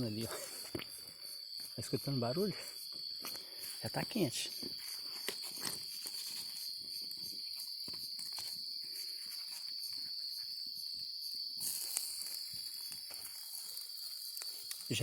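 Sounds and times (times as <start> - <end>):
insects chirring: 0.0 - 15.0
campfire crackling: 11.6 - 15.0
food sizzling and popping: 11.6 - 15.0.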